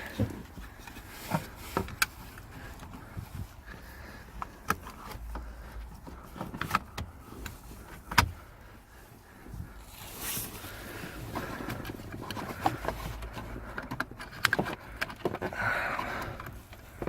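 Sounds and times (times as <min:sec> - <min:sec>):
objects being handled: 0:09.9 - 0:17.0.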